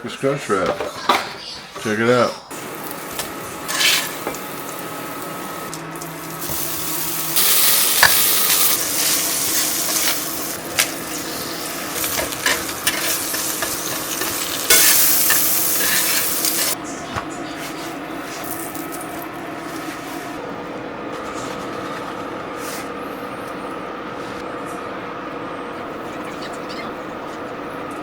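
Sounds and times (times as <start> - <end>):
food sizzling in a pan: 2.5 - 16.8.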